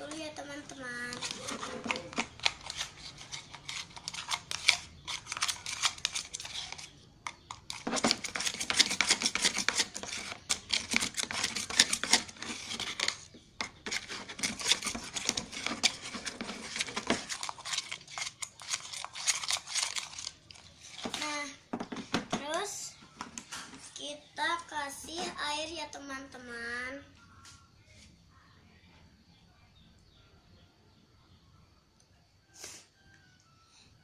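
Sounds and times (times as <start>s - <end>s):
utensil scraping in a bowl: 0.0s - 21.4s.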